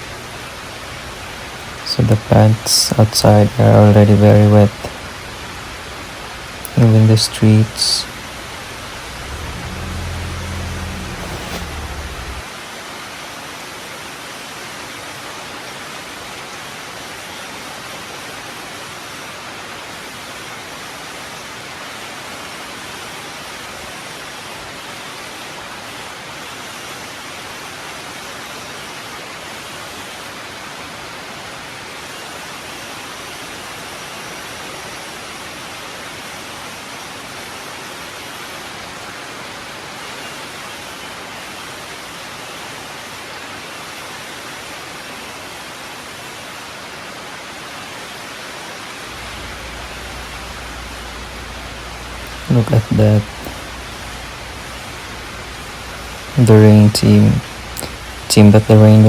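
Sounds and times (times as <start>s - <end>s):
low hum: 0.0s - 12.5s, 49.1s - 59.0s
heavy rain on roof and street: 0.0s - 58.6s.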